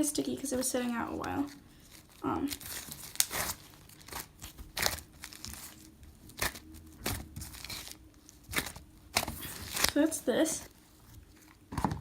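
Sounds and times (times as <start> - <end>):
sticky slime crackling: 0.4 - 12.0.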